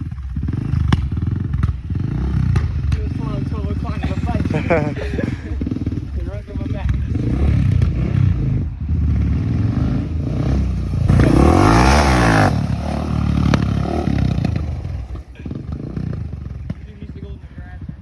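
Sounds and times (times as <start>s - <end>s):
motor vehicle engines running: 0.0s - 18.0s.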